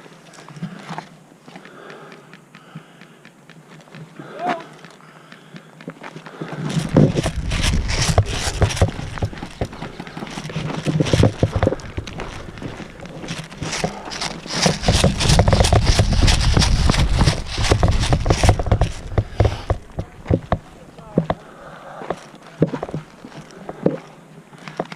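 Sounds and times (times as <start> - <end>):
footsteps on dry ground: 0.0 - 24.9
gear rattling and scraping: 6.6 - 21.4
low wind rumble on microphone: 6.7 - 21.4.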